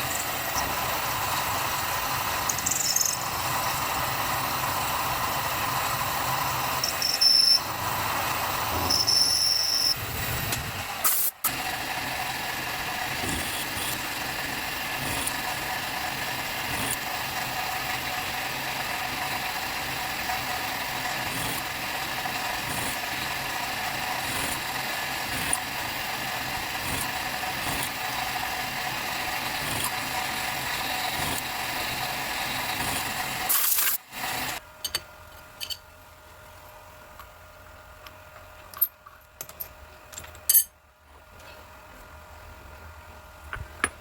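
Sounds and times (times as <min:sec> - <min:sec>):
machine stopping with clatter: 0:00.0 - 0:34.6
small machine tool running: 0:00.0 - 0:34.6.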